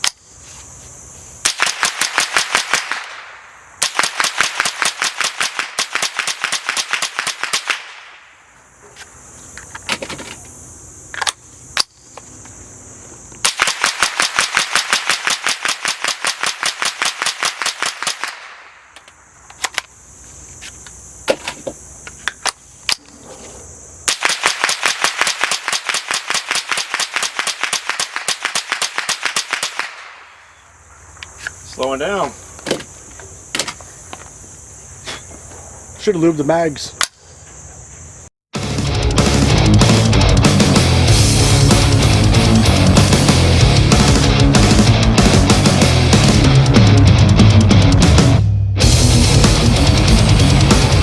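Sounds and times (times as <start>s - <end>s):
suppressed rifle rapid fire: 1.4s - 8.2s, 13.4s - 18.7s, 24.1s - 30.2s.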